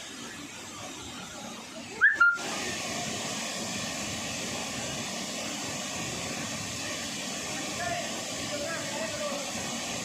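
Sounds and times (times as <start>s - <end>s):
waterfall rushing: 0.0s - 10.0s
shrill whistle notes: 2.0s - 2.4s.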